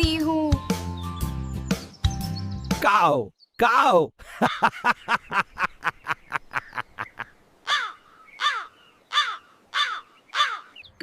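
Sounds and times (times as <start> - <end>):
crow cawing: 7.6 - 10.8.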